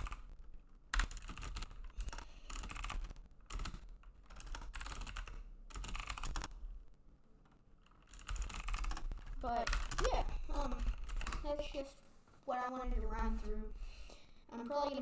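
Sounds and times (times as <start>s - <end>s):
typing on computer keyboard: 0.0s - 6.8s, 7.4s - 11.8s.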